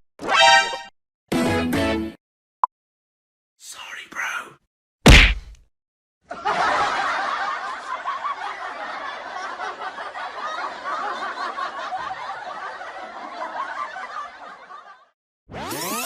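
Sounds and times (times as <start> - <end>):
laugh track: 6.2 - 15.1.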